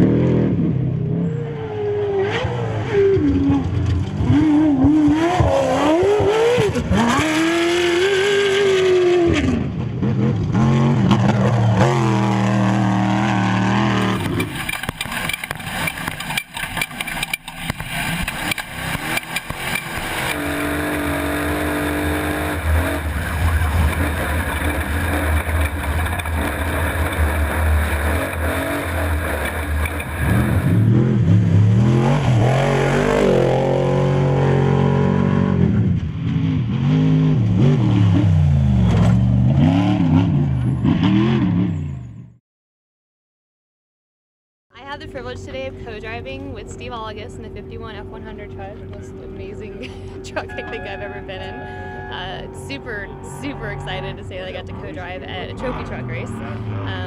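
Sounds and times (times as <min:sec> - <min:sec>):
race vehicle engines revving: 0:00.0 - 0:42.2, 0:44.8 - 0:57.0
rough rattling noise: 0:14.0 - 0:30.9.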